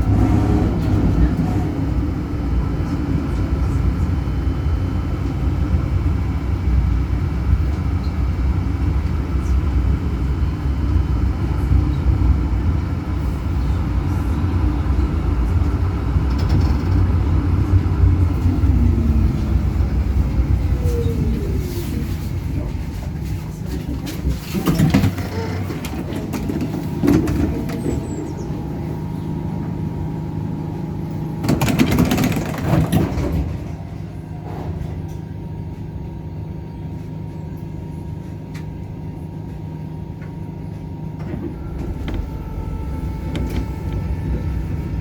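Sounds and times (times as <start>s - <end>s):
tram wheels rumbling: 0.0s - 45.0s
faint motor whine: 36.4s - 45.0s.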